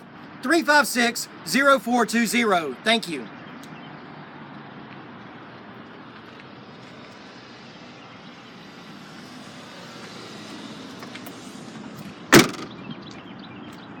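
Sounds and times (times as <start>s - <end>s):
outdoor vehicle noise: 0.0s - 14.0s
car door shutting: 12.3s - 12.8s.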